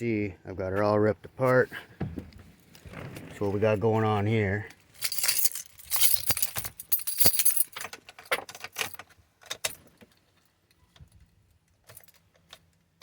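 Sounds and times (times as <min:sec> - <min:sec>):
keys jangling on a ring: 0:04.9 - 0:07.9.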